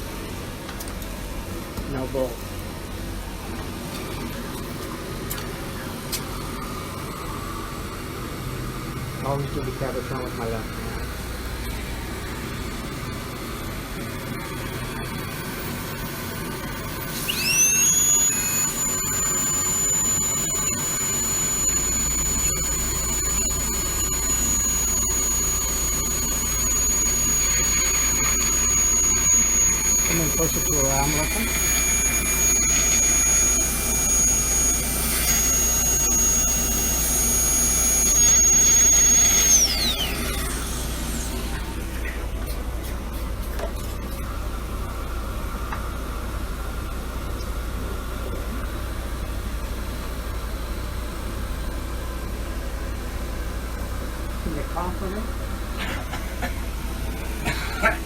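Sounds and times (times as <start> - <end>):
dental drill whine: 9.3 - 42.2, 54.2 - 58.0.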